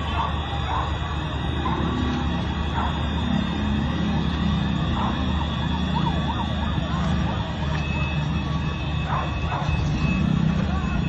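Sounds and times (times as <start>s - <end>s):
emergency siren wailing: 0.0s - 11.0s
street noise rumble: 0.0s - 11.0s.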